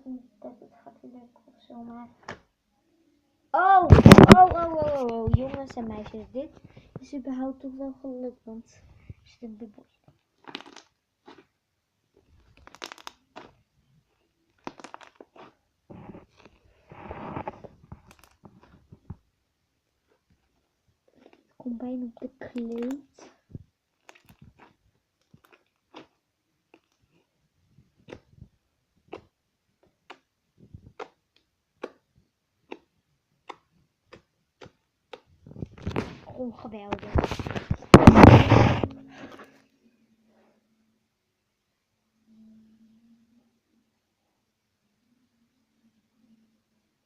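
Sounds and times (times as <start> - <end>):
slime squishing: 9.8 - 19.3, 20.0 - 28.3.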